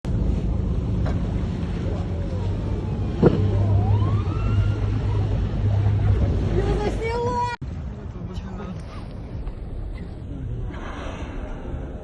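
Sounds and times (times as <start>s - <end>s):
motorboat engine running: 0.1s - 7.2s.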